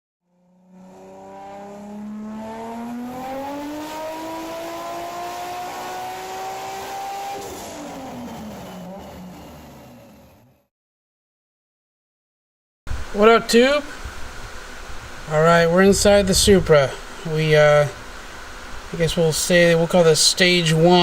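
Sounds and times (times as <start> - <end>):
car engine accelerating: 0.2 - 10.7.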